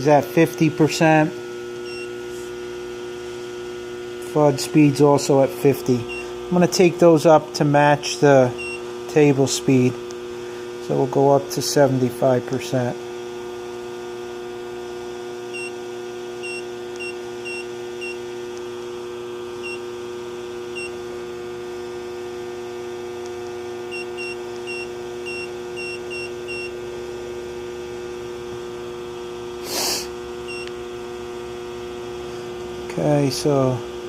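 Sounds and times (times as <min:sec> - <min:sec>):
steady electrical hum: 0:00.0 - 0:34.0
high key-press beeps: 0:01.8 - 0:02.2, 0:06.1 - 0:06.3, 0:08.6 - 0:08.8, 0:15.5 - 0:15.8, 0:16.4 - 0:18.2, 0:19.6 - 0:19.9, 0:20.7 - 0:21.0, 0:23.9 - 0:26.8, 0:30.5 - 0:30.8
short hiss: 0:29.6 - 0:30.1.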